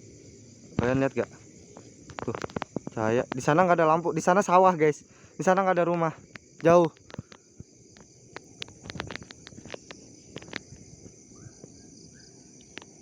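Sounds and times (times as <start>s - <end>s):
crickets chirping chorus: 0.0s - 13.0s
sharp clicks and crackles: 0.8s - 3.6s, 6.2s - 10.8s, 12.6s - 13.0s.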